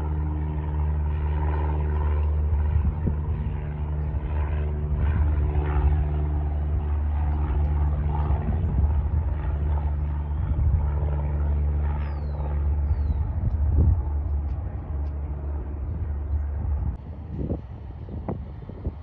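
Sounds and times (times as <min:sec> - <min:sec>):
propeller aircraft engine droning: 0:00.0 - 0:19.0.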